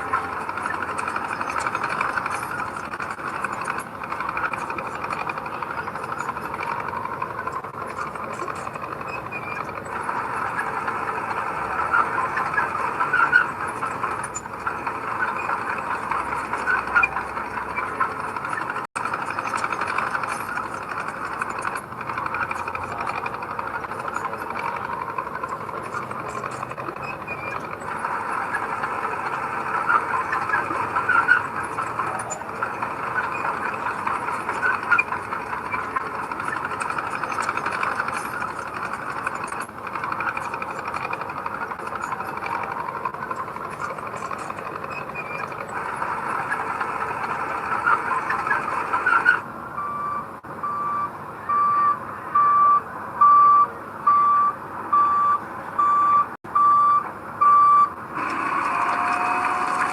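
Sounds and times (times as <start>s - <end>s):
earthmoving machinery clatter: 0.0s - 50.5s, 58.1s - 59.9s
reversing alarm beeping: 49.1s - 58.0s.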